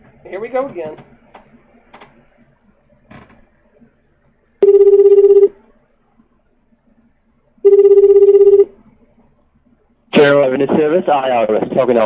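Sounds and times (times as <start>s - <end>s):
phone ringback tone: 4.6s - 5.6s, 7.6s - 8.8s.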